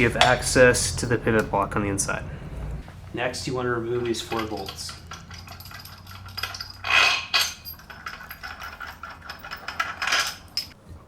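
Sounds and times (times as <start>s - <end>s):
metal tools and bolts clinking: 3.8s - 10.8s.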